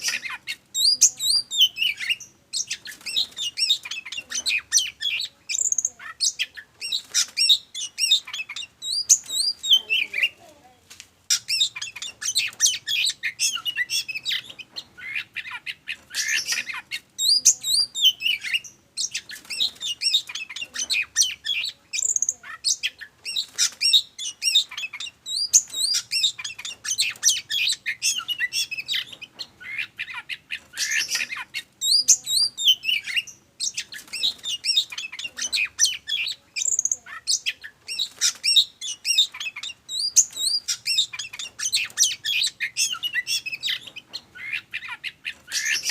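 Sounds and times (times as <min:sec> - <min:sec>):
bird song whistles and chirps: 0:00.0 - 0:10.2, 0:11.3 - 0:45.9.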